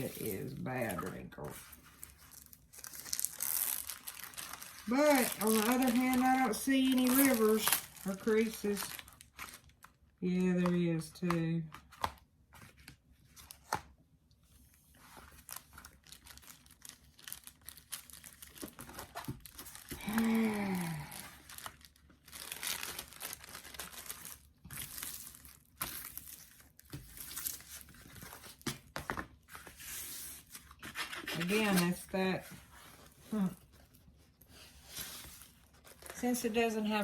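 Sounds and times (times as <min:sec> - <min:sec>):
plastic crinkling and rustling: 0:00.0 - 0:10.1, 0:14.6 - 0:37.0
person humming: 0:20.0 - 0:21.2.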